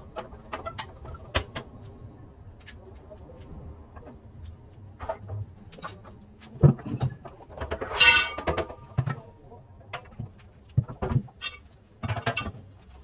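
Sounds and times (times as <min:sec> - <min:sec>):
short scraping rattle: 0:07.8 - 0:08.8.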